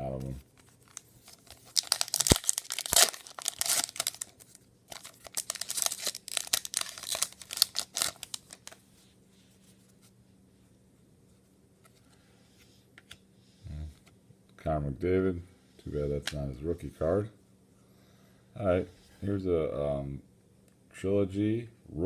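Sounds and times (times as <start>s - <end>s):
wrapper tearing and rustling: 0.6s - 8.8s.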